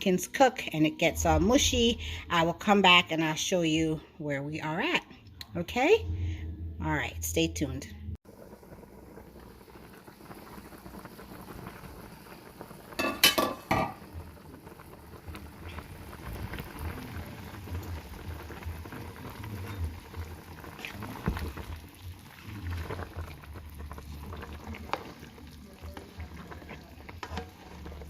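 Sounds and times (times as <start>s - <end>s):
soup boiling and bubbling: 8.2s - 28.0s.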